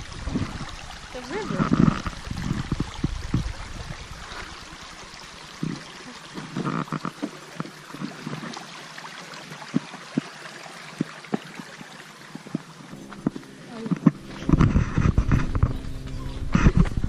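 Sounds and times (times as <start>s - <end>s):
creek water running: 0.0s - 17.0s.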